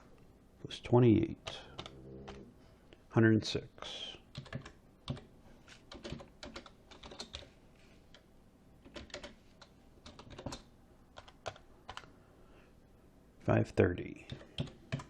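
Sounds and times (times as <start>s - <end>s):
faint keyboard typing: 1.4s - 2.5s, 4.1s - 12.2s, 14.2s - 15.0s.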